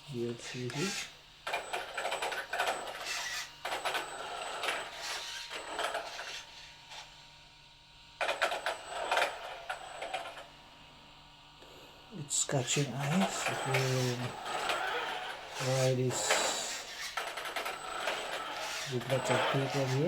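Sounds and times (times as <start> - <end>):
toy truck motor and gears whirring: 0.0 - 7.2, 8.2 - 10.6, 12.3 - 20.0
tyres scrubbing the floor: 12.6 - 20.0.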